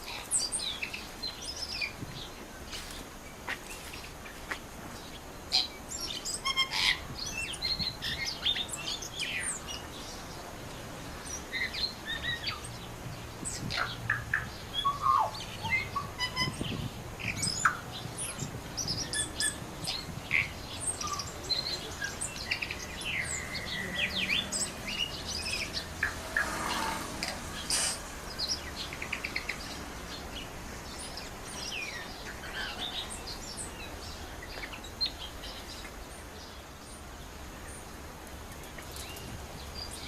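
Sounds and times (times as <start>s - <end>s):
birds chirping: 0.0s - 40.0s.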